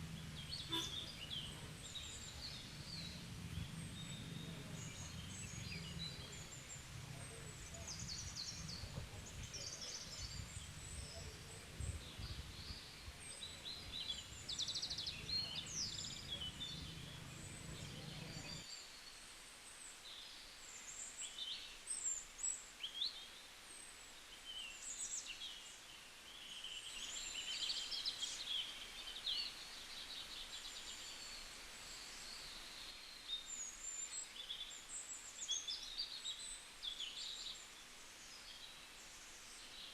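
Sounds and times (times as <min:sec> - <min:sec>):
low rumble: 0:00.0 - 0:18.6
small birds chirping: 0:00.0 - 0:19.2, 0:19.8 - 0:39.9.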